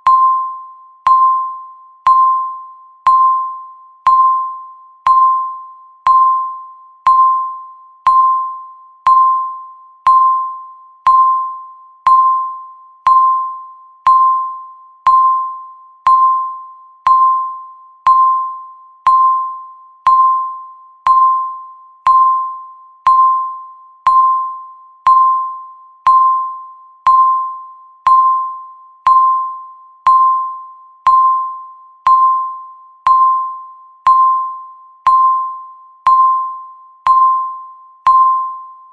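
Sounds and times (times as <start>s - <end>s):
countdown timer pinging: 0.0s - 38.9s.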